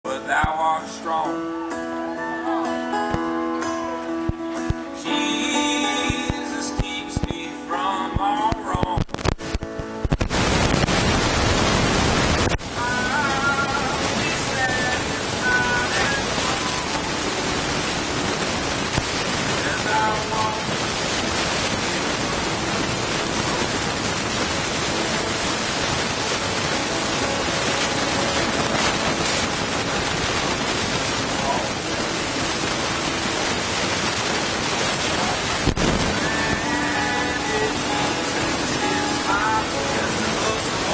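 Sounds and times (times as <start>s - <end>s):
person singing: 0.1s - 3.6s, 4.8s - 9.2s, 12.6s - 17.3s, 19.5s - 20.8s, 36.1s - 40.9s
faint band music: 0.1s - 10.2s
sharp recording crackles: 3.0s - 40.9s
loud steady hiss: 4.4s - 40.9s.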